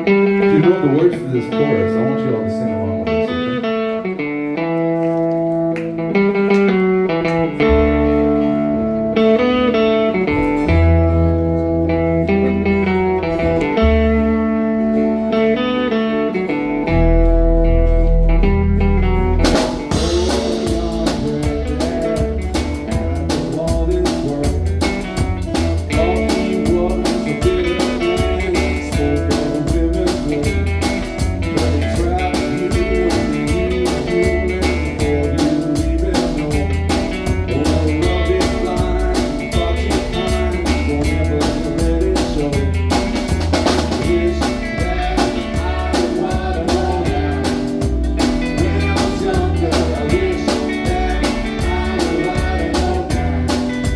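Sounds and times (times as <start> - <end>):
electric guitar: 0.0 - 53.9
bass line: 5.8 - 53.9
drum kit beat: 17.5 - 53.9.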